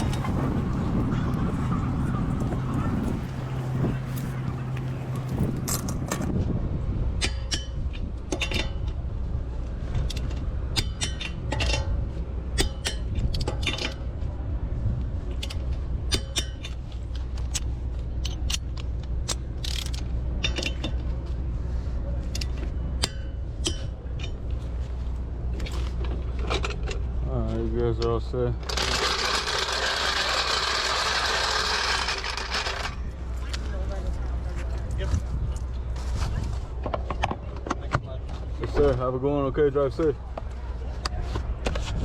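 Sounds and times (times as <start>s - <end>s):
low engine hum: 0.0s - 42.0s
metal tools clinking and clanking: 10.1s - 12.0s, 19.6s - 21.1s.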